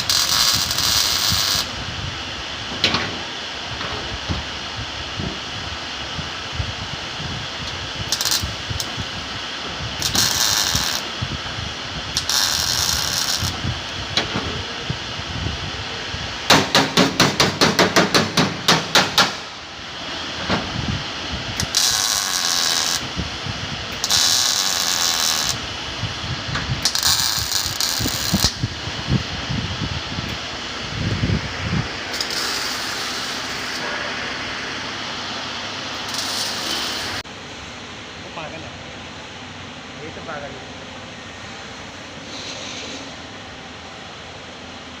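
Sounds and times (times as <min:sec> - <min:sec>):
steady background noise: 0:00.0 - 0:45.0.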